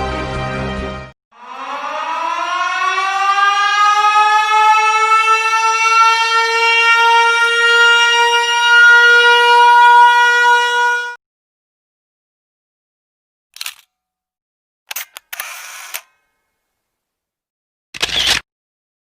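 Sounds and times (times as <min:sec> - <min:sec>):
siren winding up: 0:01.4 - 0:11.2, 0:18.0 - 0:18.4.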